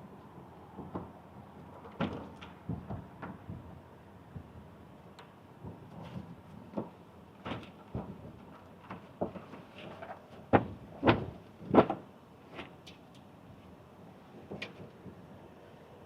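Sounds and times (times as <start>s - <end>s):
knocks and clunks of handling: 0.8s - 3.6s, 5.6s - 12.1s.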